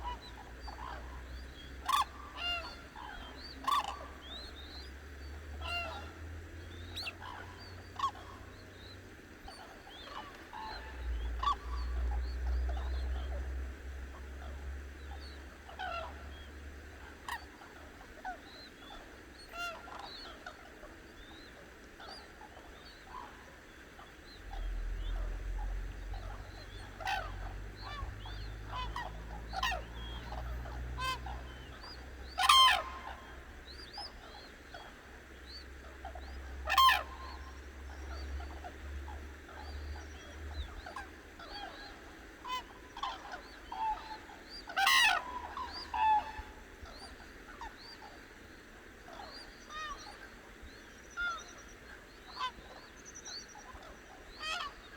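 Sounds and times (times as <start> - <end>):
cranes calling: 0.0 - 54.9
loud ringing crane calls: 23.2 - 50.7.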